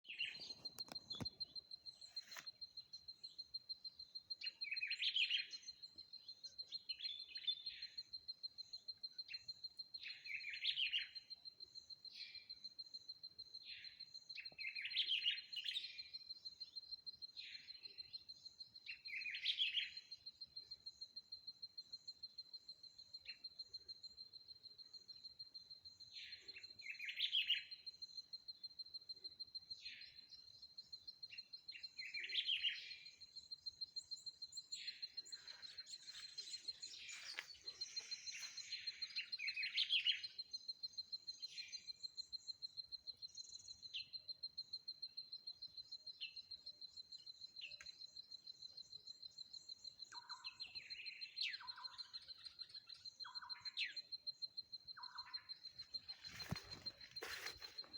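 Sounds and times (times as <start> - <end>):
birds calling and chirping: 0.0 - 8.1, 29.8 - 42.3, 49.6 - 57.9.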